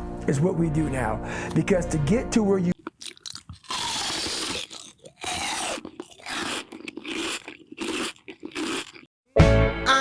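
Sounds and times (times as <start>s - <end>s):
crunching: 2.7s - 9.1s.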